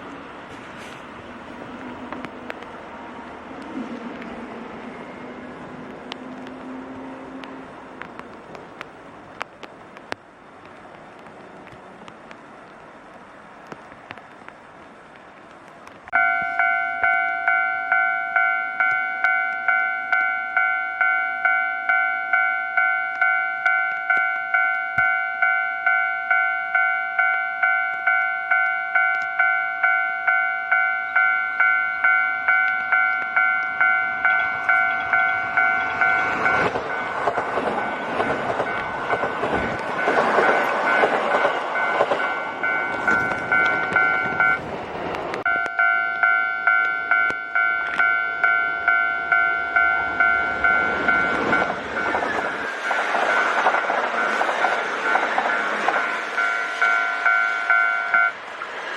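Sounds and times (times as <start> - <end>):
train rushing past: 0.0 - 14.4, 29.4 - 58.9
level crossing bell ringing: 16.2 - 37.2, 41.7 - 44.6, 45.5 - 52.3, 55.5 - 58.4.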